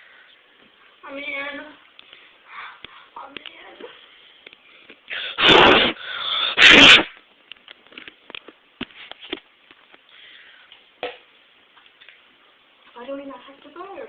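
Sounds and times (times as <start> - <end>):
explosive mouth bursts: 5.1 - 7.2.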